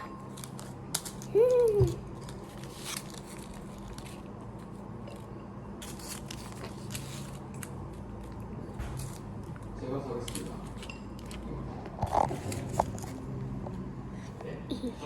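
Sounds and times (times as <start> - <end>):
low steady hum: 0.0 - 15.0
candy packet crackling: 0.2 - 5.0.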